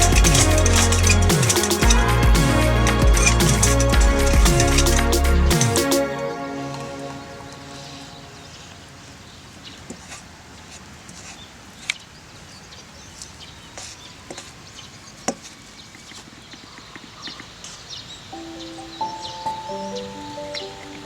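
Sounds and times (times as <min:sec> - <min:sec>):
steady low hiss: 0:17.1 - 0:21.0.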